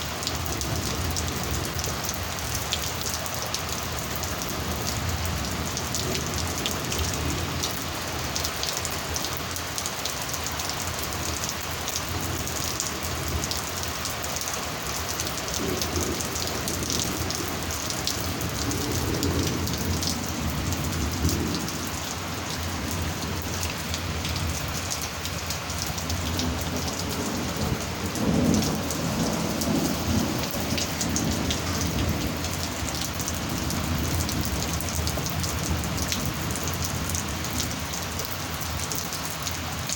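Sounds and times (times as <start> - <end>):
heavy rain: 0.0 - 39.9
raindrops spattering: 0.0 - 39.9
thunder rumbles: 15.4 - 37.7.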